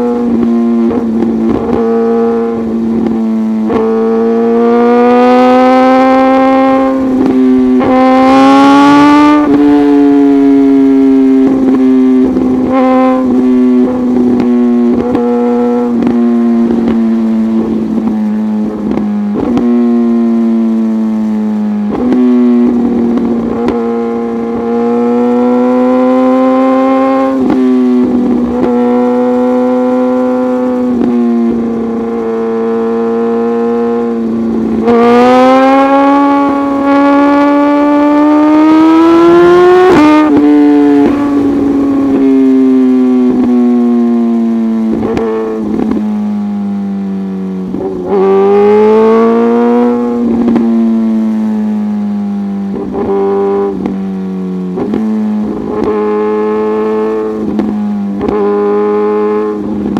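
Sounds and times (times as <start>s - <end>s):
motorcycle engine accelerating: 0.0s - 59.9s
gear change breaks: 0.1s - 46.2s.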